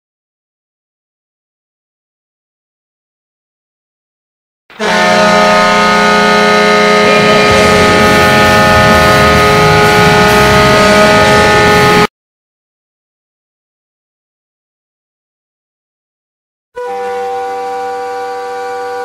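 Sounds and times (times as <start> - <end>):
goal horn blaring: 4.7 - 12.1, 16.8 - 19.0
crowd noise: 6.7 - 12.1.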